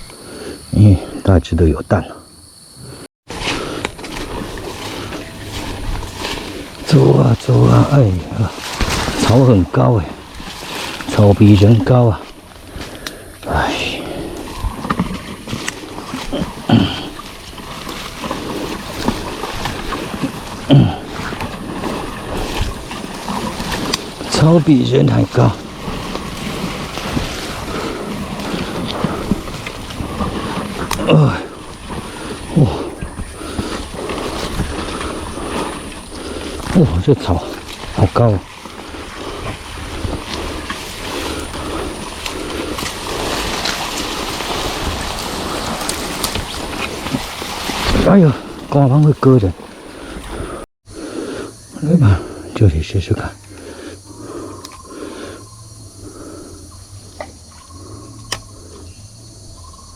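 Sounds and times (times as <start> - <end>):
tall grass swishing: 3.3 - 50.6.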